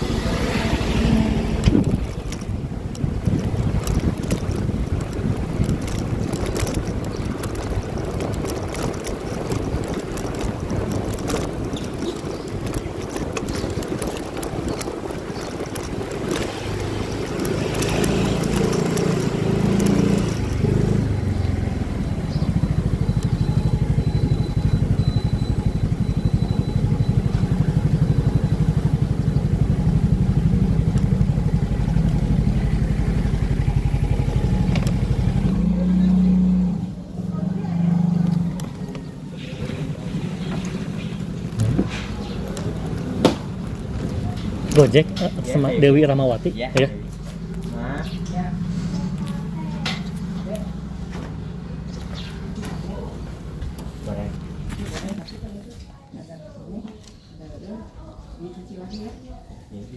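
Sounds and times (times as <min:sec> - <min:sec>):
wind rushing over microphone: 0:00.0 - 0:17.7
motorcycle engine: 0:00.0 - 0:55.8.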